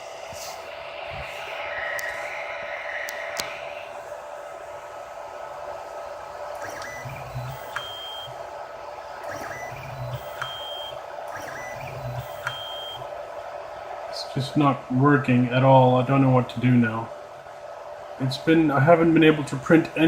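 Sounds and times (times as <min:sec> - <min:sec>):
printer electrical hum: 0:00.0 - 0:20.0.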